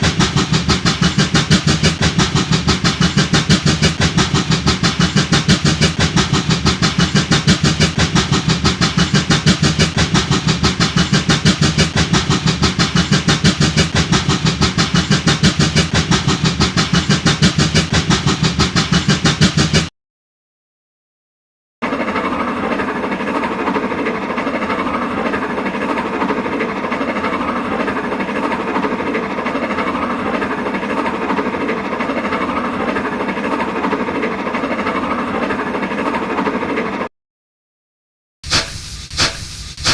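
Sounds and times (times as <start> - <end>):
steam locomotive chuffing: 0.0 - 19.9, 21.8 - 37.1, 38.4 - 39.9.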